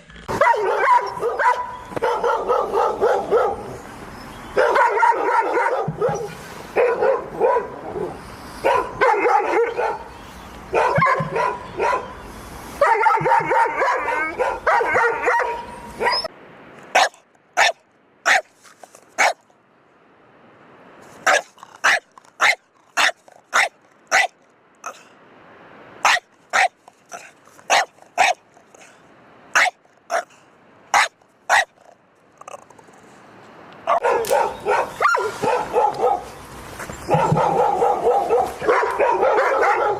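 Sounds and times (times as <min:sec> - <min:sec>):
dog barking: 0:00.3 - 0:03.8, 0:04.6 - 0:10.1, 0:10.7 - 0:12.2, 0:12.8 - 0:16.3, 0:17.0 - 0:18.5, 0:19.2 - 0:19.4, 0:21.2 - 0:24.4, 0:26.0 - 0:28.4, 0:29.6 - 0:30.3, 0:30.9 - 0:31.8, 0:33.9 - 0:36.3, 0:37.1 - 0:39.9.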